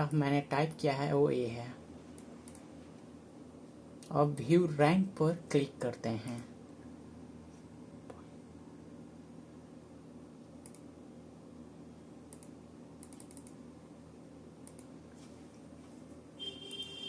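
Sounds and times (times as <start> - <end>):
low room hum: 0.0 - 17.0
keyboard and mouse clicks: 2.1 - 2.7, 10.6 - 10.9, 12.3 - 13.6, 14.6 - 14.9.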